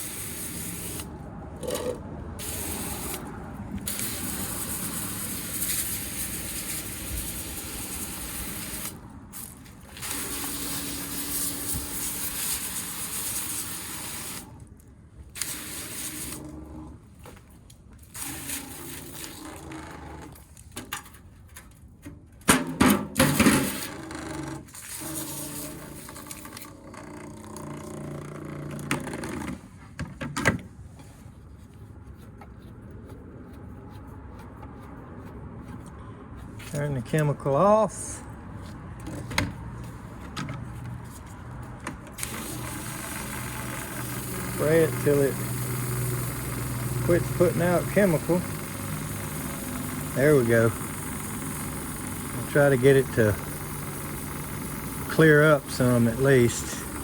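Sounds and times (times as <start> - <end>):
sprayer wand hissing: 0.0 - 1.1, 2.4 - 3.3, 3.9 - 14.5.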